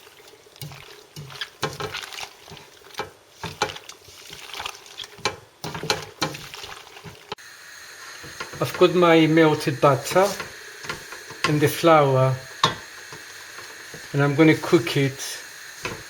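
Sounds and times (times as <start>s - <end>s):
wet sticky stirring in pan: 0.0s - 7.4s
spoon knocking against pan: 5.2s - 6.4s.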